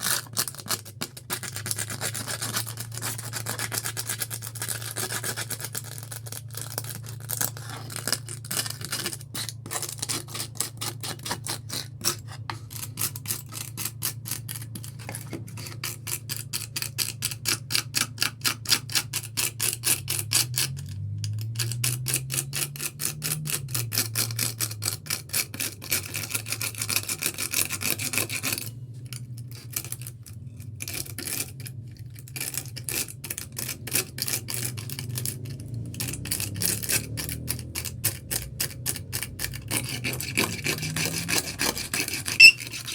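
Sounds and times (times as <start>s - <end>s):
hand sanding scraping strokes: 39.7s - 42.9s.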